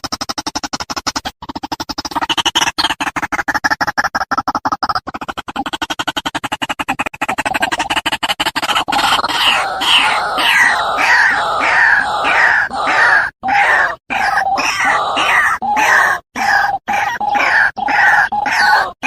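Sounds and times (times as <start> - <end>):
waterhen harsh calls: 8.9 - 19.0.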